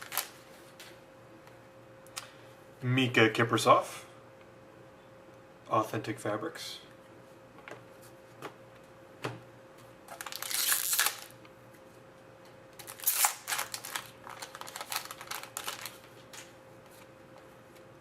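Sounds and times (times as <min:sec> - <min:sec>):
wrapper crinkling: 0:00.0 - 0:00.4, 0:10.1 - 0:11.4, 0:12.8 - 0:16.5.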